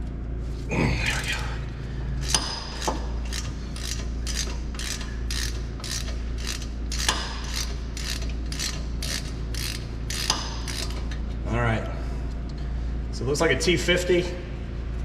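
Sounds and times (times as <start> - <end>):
hand ratchet clicking: 2.2 - 11.2.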